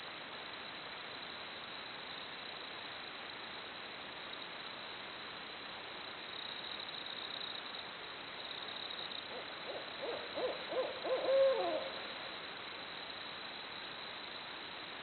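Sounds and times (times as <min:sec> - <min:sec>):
background hiss: 0:00.0 - 0:15.0
owl hooting: 0:09.3 - 0:12.2.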